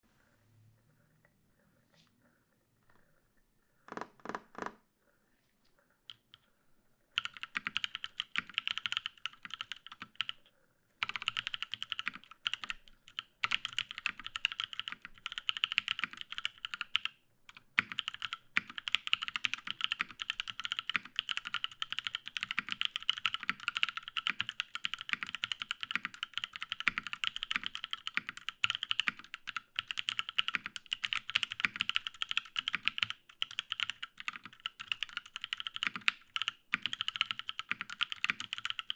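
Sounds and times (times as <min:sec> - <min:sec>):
fast mechanical keyboard typing: 0:07.2 - 0:10.4, 0:11.0 - 0:38.9.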